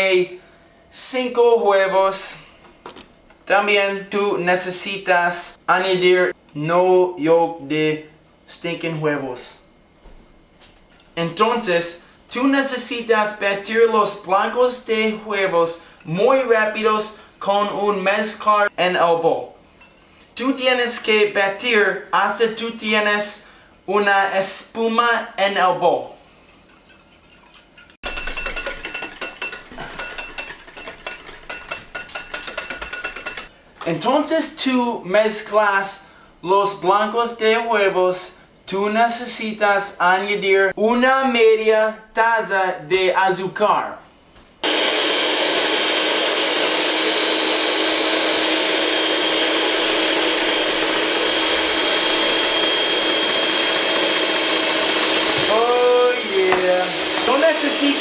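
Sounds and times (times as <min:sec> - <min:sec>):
whisk clinking against bowl: 0:26.7 - 0:33.5
electric mixer whirring: 0:44.6 - 0:58.0.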